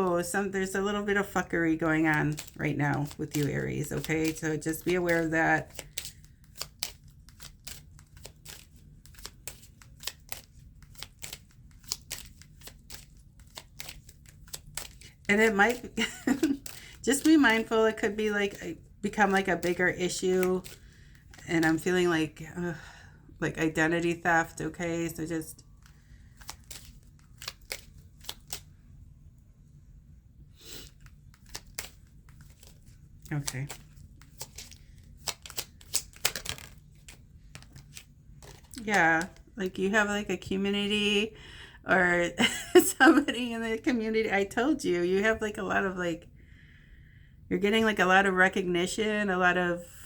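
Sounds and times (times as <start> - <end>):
cards being shuffled: 0.6 - 22.0, 25.6 - 28.7, 30.6 - 39.8.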